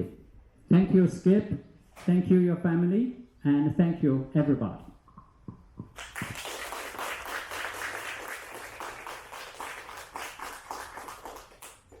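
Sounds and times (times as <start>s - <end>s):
audience applauding: 6.0s - 12.0s.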